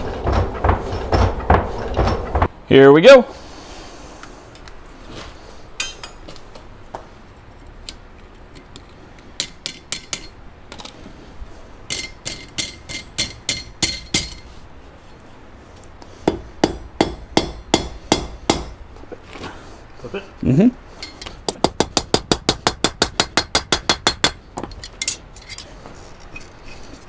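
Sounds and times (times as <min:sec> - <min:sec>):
hammer striking rivet on anvil: 0:11.9 - 0:14.4, 0:16.3 - 0:18.8, 0:21.5 - 0:25.2.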